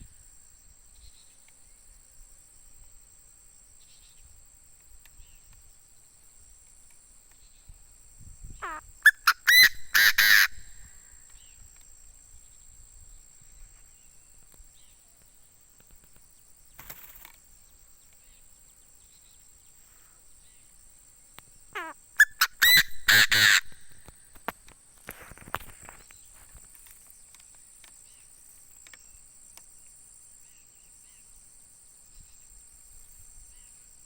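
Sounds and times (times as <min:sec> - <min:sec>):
bird crowing harsh calls: 0:08.6 - 0:11.1, 0:21.8 - 0:24.1.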